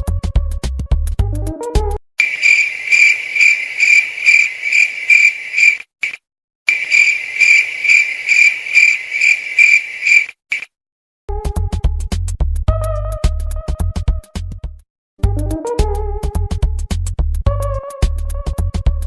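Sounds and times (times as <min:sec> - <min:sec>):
cricket chirping: 0:02.2 - 0:05.8, 0:06.7 - 0:10.3.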